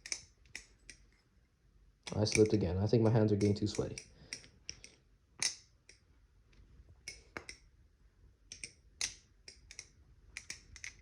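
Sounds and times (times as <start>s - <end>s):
butterfly knife handles clicking: 0.0s - 1.2s, 2.0s - 2.6s, 3.4s - 6.0s, 7.0s - 7.7s, 8.5s - 11.0s.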